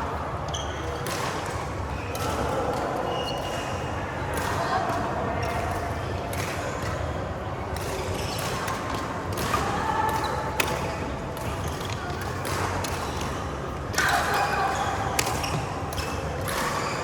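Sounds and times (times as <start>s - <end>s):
racket hitting shuttlecock: 7.8s - 17.0s.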